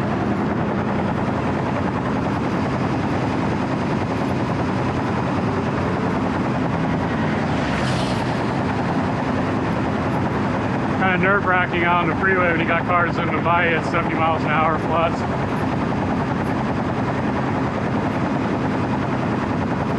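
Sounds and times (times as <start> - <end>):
diesel engine running: 0.0 - 19.9
vehicle swishing past: 7.2 - 8.7.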